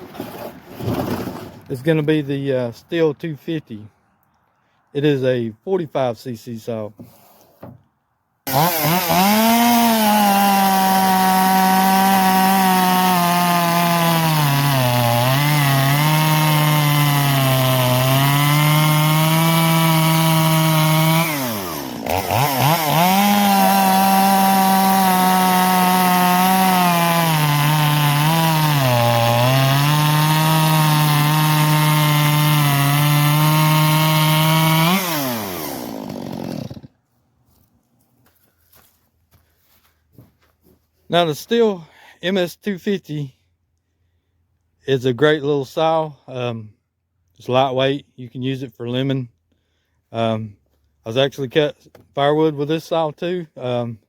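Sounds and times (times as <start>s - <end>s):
chainsaw cutting wood: 0.0s - 1.7s, 8.4s - 37.0s.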